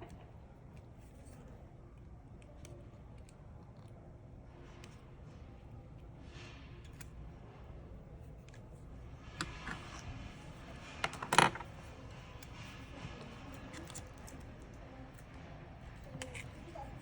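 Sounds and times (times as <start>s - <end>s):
tools clicking on phone parts: 6.8s - 7.3s, 8.4s - 17.0s.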